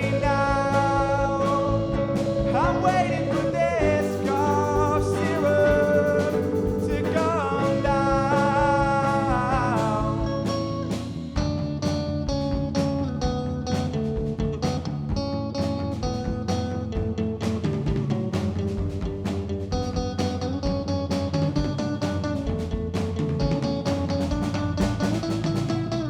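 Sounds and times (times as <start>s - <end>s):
person singing over guitar: 0.0s - 10.8s
strummed guitar with beat: 0.0s - 26.0s.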